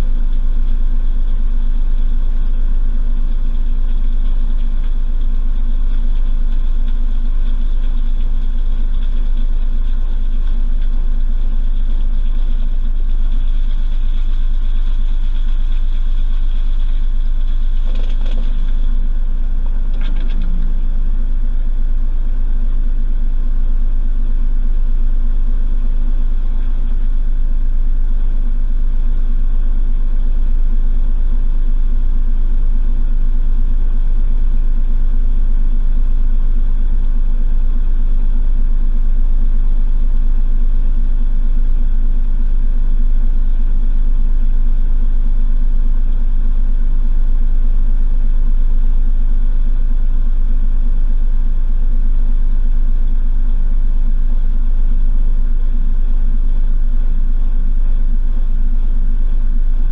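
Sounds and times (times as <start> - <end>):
washing machine humming: 3.4 - 24.7.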